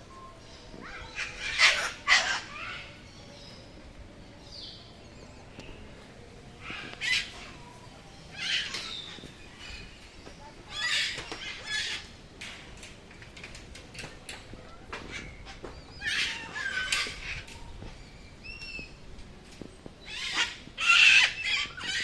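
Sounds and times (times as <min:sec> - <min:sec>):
birds calling: 0:00.0 - 0:22.0.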